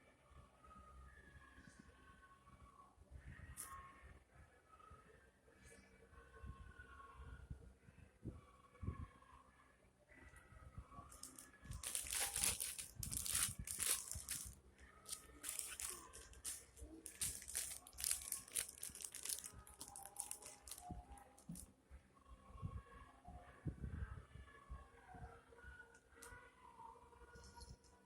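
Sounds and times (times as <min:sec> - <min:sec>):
plastic packaging crinkling: 0:11.1 - 0:21.6.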